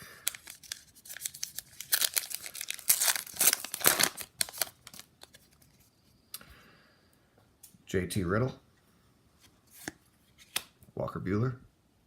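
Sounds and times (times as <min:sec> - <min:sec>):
card pack wrapper tearing and crinkling: 0:00.0 - 0:05.8.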